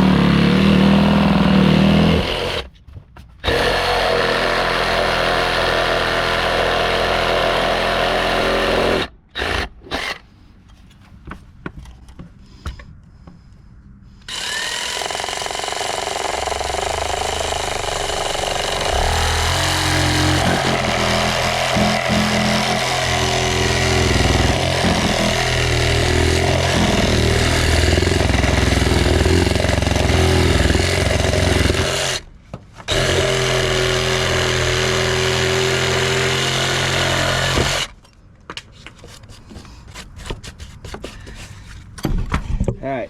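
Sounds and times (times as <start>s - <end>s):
reciprocating saw cutting wood: 14.3s - 32.2s, 32.9s - 38.0s.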